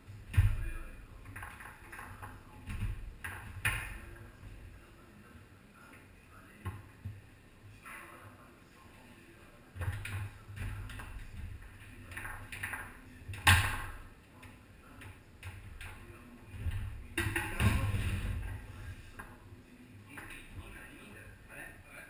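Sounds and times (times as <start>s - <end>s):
foosball clacks and knocks: 0.3s - 4.1s, 9.8s - 14.0s, 15.0s - 18.5s.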